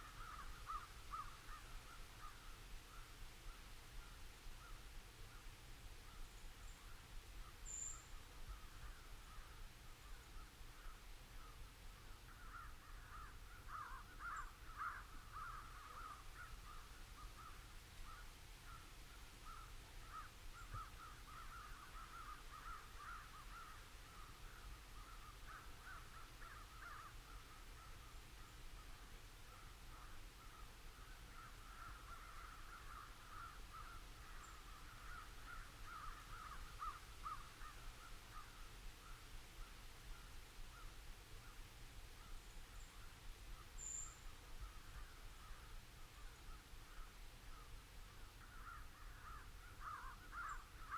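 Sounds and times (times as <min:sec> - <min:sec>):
distant crows cawing: 0:00.0 - 0:02.5, 0:12.2 - 0:28.1, 0:29.4 - 0:38.6, 0:48.4 - 0:50.9
small bird chirp: 0:07.6 - 0:08.2, 0:42.3 - 0:44.8.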